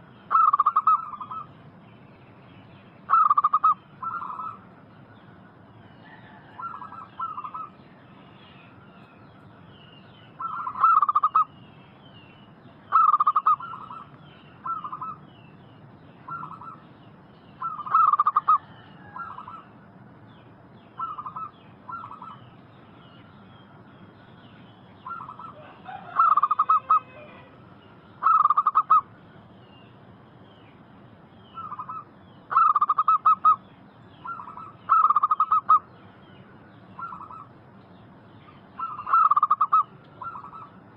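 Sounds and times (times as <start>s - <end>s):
doves cooing: 0.0s - 1.5s, 3.1s - 4.7s, 6.0s - 7.8s, 10.4s - 11.5s, 12.9s - 15.2s, 17.6s - 19.8s, 21.0s - 22.4s, 25.0s - 29.1s, 31.6s - 33.6s, 34.2s - 35.9s, 37.0s - 37.5s, 38.8s - 40.8s.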